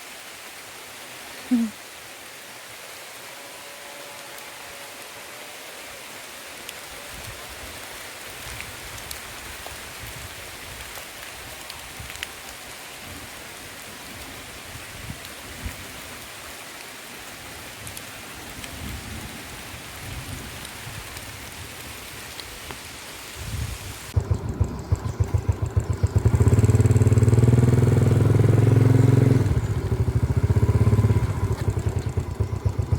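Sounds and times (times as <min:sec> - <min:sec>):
rain hissing: 0:00.0 - 0:24.3, 0:26.1 - 0:32.9
low rumbles: 0:24.1 - 0:32.9
loud small engine running: 0:24.2 - 0:32.9.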